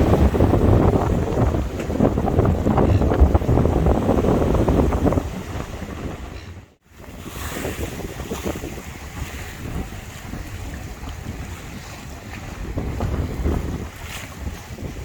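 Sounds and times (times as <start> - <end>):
water rushing: 0.0 - 6.4
wind buffeting microphone: 0.0 - 15.0.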